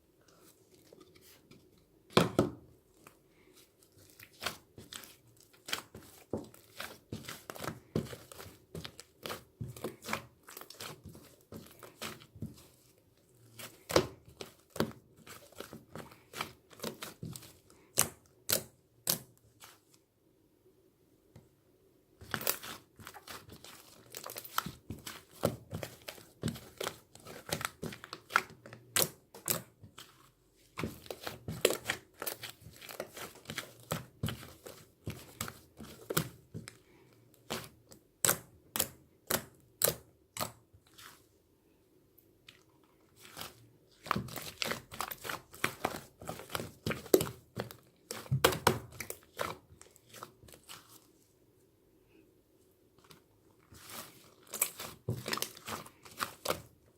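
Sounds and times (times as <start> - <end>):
crinkling and crunching: 0.2 - 18.0, 22.2 - 41.3, 42.4 - 51.3, 52.9 - 56.9.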